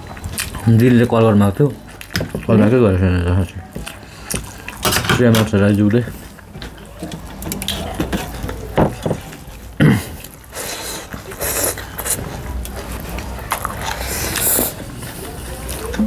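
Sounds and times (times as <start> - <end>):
chewing: 0.0 - 4.8, 5.5 - 16.0
person slurping: 9.8 - 12.3, 13.8 - 16.0.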